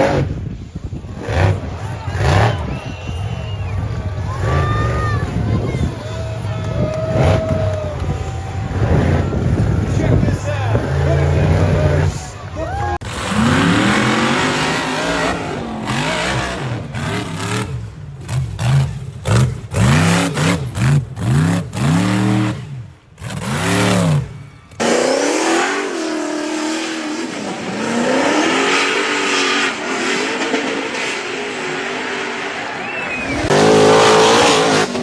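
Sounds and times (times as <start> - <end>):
engine revving in short bursts: 13.0 - 27.1.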